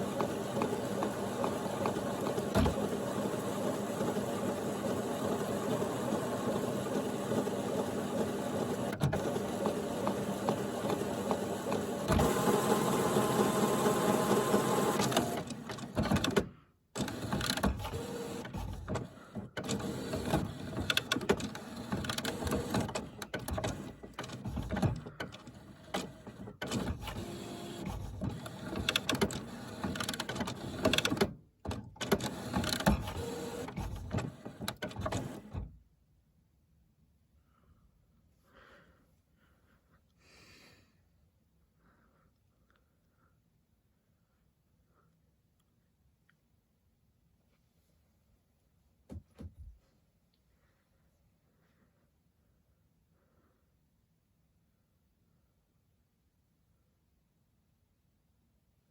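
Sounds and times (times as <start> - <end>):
printer motors whirring: 0.0 - 35.7
printer clicks and clunks: 0.0 - 35.8.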